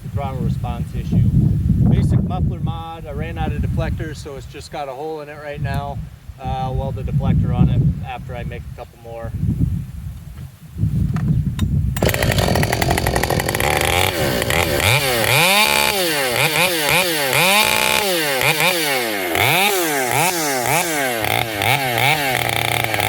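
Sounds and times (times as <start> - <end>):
wind rumble on microphone: 0.0 - 4.8, 5.4 - 14.8
chainsaw revving: 12.0 - 23.0.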